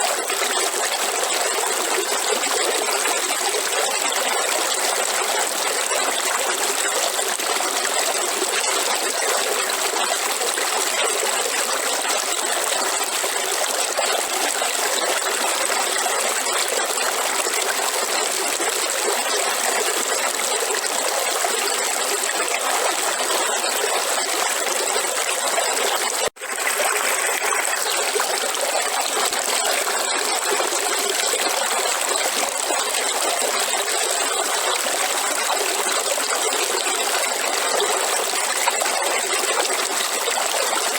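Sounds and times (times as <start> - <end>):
river water flowing: 24.4 - 40.9.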